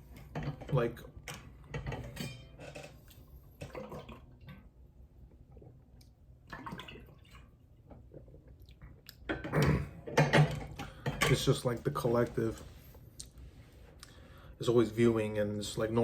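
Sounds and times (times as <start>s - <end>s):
chewing and wet mouth sounds: 8.1s - 9.3s, 13.1s - 13.4s.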